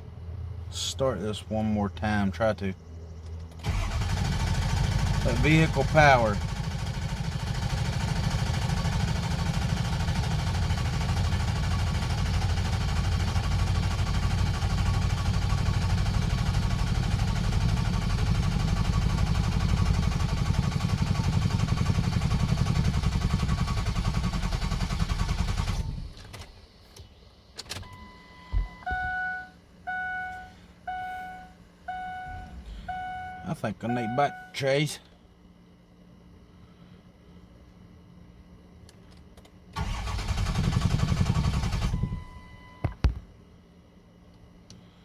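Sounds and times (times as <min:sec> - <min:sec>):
diesel engine cranking: 0:03.2 - 0:26.5, 0:39.8 - 0:42.3
two-tone electronic chime: 0:28.6 - 0:34.6.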